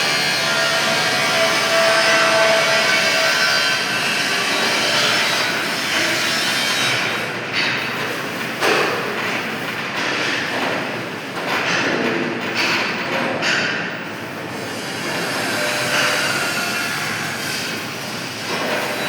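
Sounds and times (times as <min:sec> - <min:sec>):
lathe cutting metal: 0:00.0 - 0:07.3, 0:14.7 - 0:19.0.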